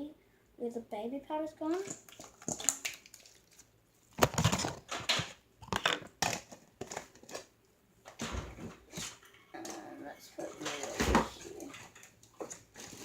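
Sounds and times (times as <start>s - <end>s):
slime squishing in hands: 1.7s - 4.6s.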